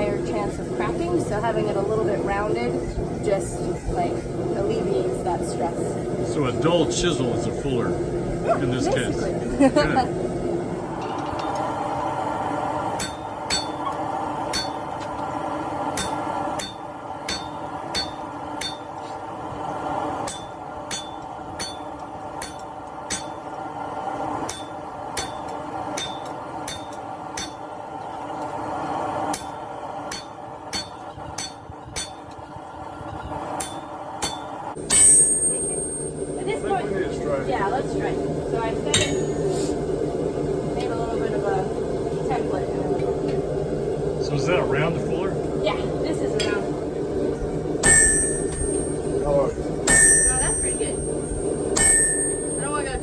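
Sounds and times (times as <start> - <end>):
steady hum: 0.0 - 53.0
hammer striking chisel on steel: 13.0 - 15.1, 16.0 - 19.1, 20.3 - 23.4, 24.5 - 27.8, 29.3 - 32.4, 33.6 - 36.2, 38.9 - 39.4, 47.8 - 49.1, 49.8 - 51.0, 51.7 - 52.8.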